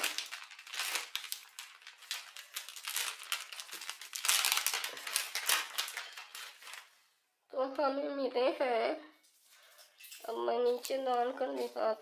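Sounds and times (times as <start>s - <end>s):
wrapper crinkling and rustling: 0.0s - 7.0s, 10.0s - 12.0s.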